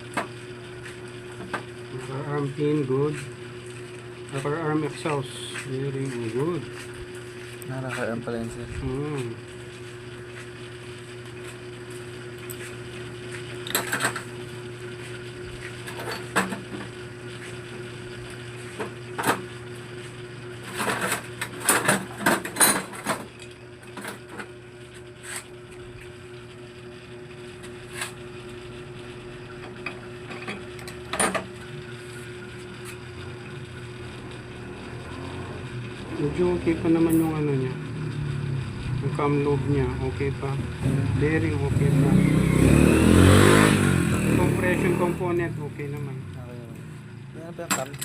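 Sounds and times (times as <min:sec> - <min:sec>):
steady low hum: 0:00.0 - 0:48.0
metal engine parts clinking: 0:47.6 - 0:48.0.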